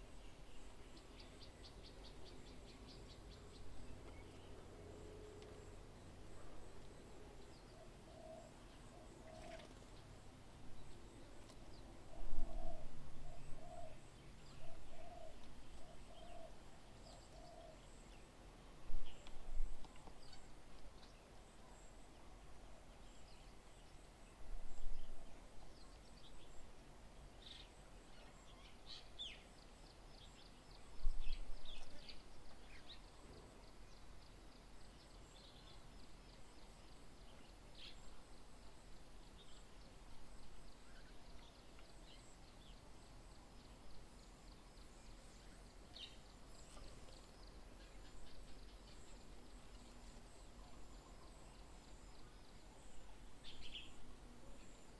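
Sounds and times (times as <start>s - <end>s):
small birds chirping: 22.8s - 54.9s.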